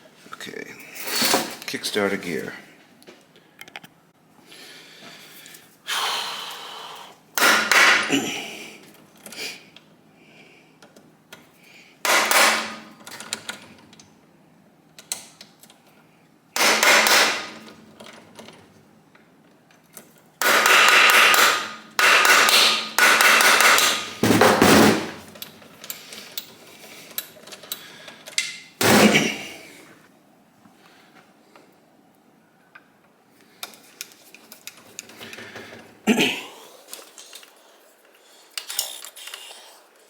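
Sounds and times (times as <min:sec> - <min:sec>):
rapid metallic hammering: 0:20.4 - 0:25.2.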